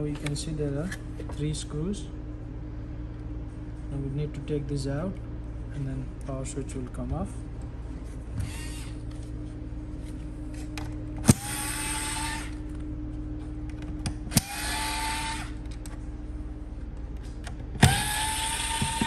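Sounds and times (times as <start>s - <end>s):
electric screwdriver running: 11.3s - 12.6s, 14.3s - 15.6s, 17.8s - 19.0s.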